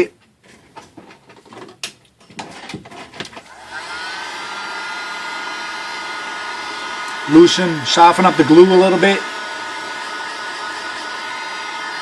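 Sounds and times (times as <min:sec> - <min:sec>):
hot-air blower running: 0:03.4 - 0:12.0.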